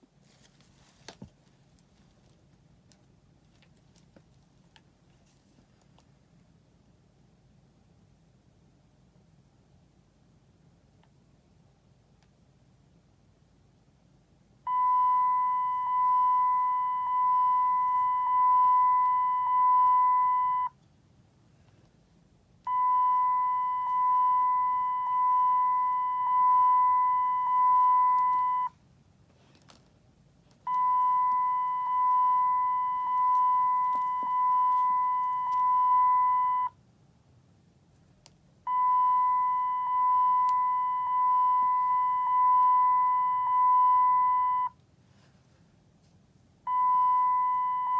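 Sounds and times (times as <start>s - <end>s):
seatbelt reminder chime beeping: 14.7s - 20.7s, 30.7s - 36.7s.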